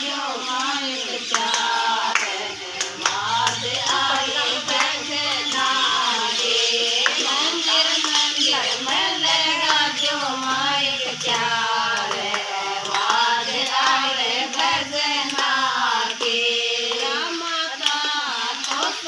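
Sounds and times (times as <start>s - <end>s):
hand claps keeping time: 0.0s - 19.0s
woman singing devotional song: 0.0s - 19.0s.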